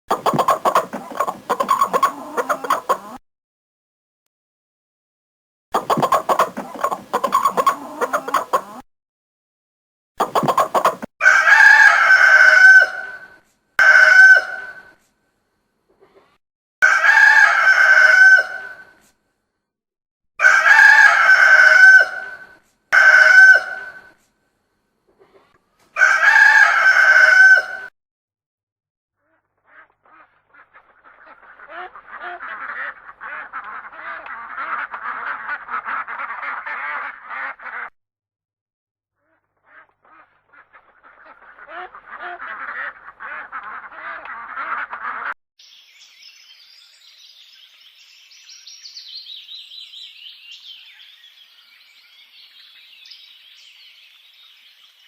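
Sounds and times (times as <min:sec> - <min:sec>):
farm birds calling: 0:00.1 - 0:03.2, 0:05.8 - 0:08.8, 0:10.2 - 0:11.1
rooster crowing: 0:10.3 - 0:13.2, 0:16.8 - 0:18.8, 0:20.4 - 0:22.4, 0:26.0 - 0:27.9.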